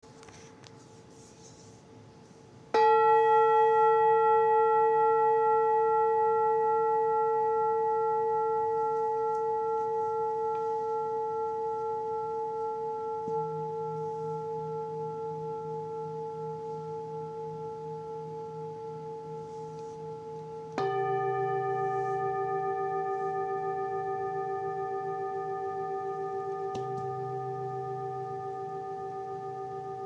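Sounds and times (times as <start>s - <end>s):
singing bowl ringing: 2.7s - 30.0s
low pulsing tone: 6.8s - 30.0s.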